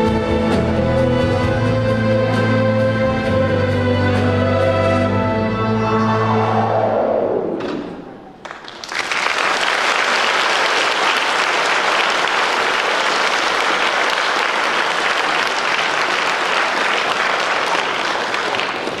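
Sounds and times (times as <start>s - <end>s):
audience applause: 7.8s - 19.0s
lone claps: 8.4s - 19.0s.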